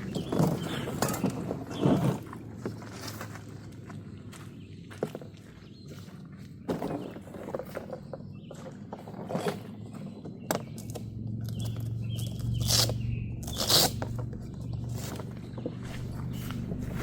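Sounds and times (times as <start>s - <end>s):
irregular scrapes and crunches: 0.0s - 17.0s
low steady hum: 9.9s - 17.0s.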